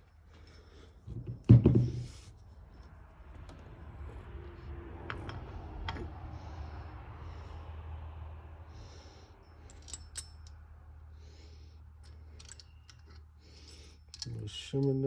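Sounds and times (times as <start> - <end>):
low steady hum: 0.0 - 15.0
metallic clicks of hand tools: 12.0 - 15.0.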